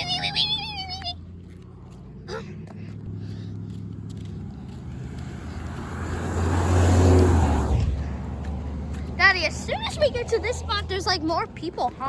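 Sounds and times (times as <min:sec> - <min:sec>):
vehicle passing by: 0:00.0 - 0:12.0.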